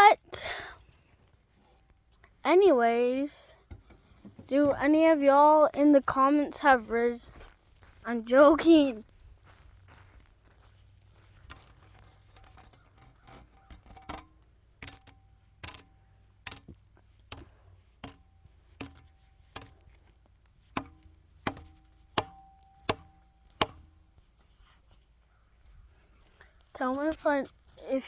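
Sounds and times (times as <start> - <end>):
axe chopping wood: 20.7 - 24.0.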